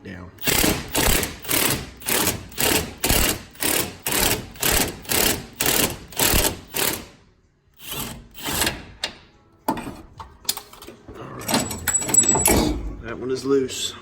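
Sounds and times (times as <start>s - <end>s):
impact wrench bursts: 0.4s - 7.2s, 7.8s - 8.9s.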